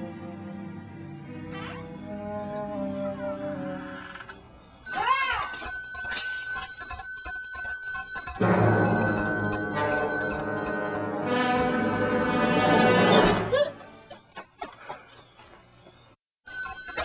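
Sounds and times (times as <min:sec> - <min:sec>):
music: 0:00.0 - 0:04.2, 0:08.4 - 0:14.2
alarm bell ringing: 0:04.9 - 0:12.9, 0:16.4 - 0:17.0.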